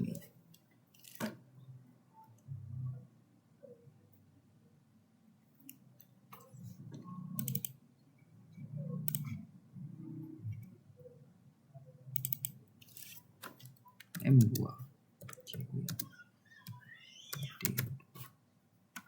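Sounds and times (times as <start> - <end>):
computer mouse clicking: 5.6 - 7.8, 9.0 - 9.4, 12.2 - 18.3.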